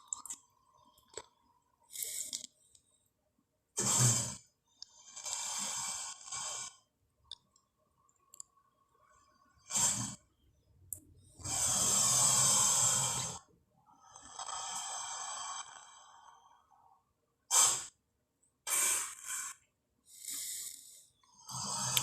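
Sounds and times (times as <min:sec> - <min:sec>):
monster hissing and snorting: 0:11.5 - 0:13.4, 0:17.5 - 0:17.9.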